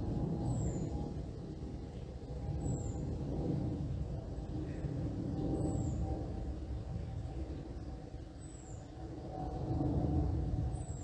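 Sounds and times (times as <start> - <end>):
airplane flying overhead: 0.0 - 11.0.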